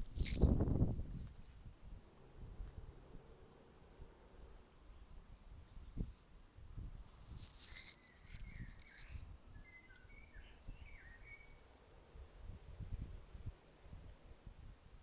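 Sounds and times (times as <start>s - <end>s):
bird chirping: 7.7s - 12.3s.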